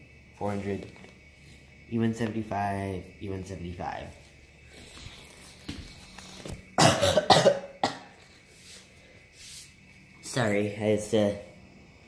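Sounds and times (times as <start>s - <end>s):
woman coughing: 6.8s - 8.2s.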